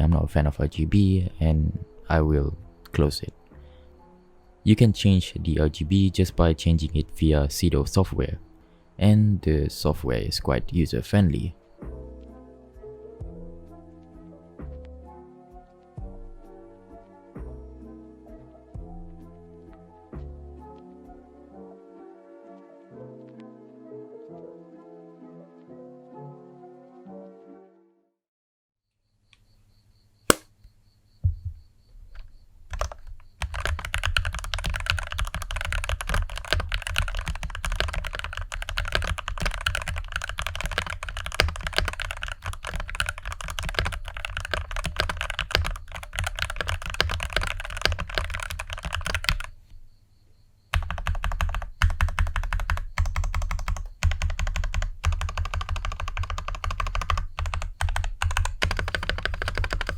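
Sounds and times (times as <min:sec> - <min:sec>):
typing on mechanical keyboard: 0:32.7 - 0:49.5, 0:50.7 - 0:59.9.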